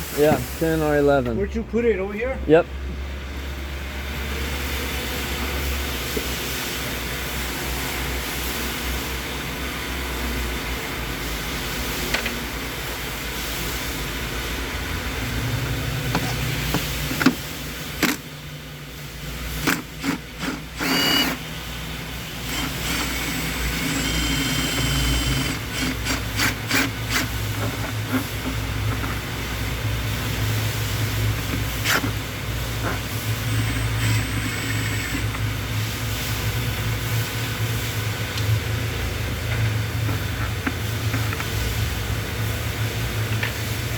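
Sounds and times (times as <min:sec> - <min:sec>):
low mechanical hum: 0:00.0 - 0:43.9
hand tools clicking and knocking: 0:18.0 - 0:18.2.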